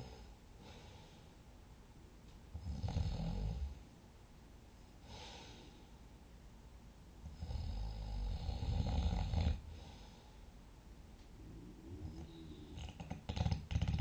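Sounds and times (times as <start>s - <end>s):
person snoring: 11.4s - 14.0s.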